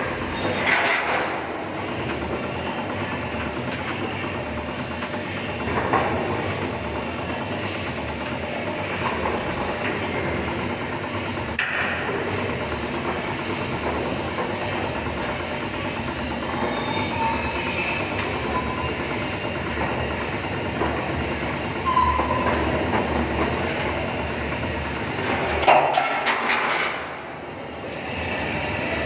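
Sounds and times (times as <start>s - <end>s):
machinery rumbling: 0.0s - 29.0s
brief tones: 21.8s - 22.6s.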